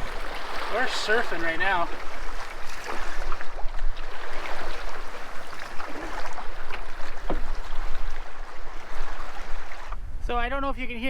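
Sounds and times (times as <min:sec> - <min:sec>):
waves splashing against canoe: 0:00.0 - 0:10.2
wind buffeting microphone: 0:00.0 - 0:11.0.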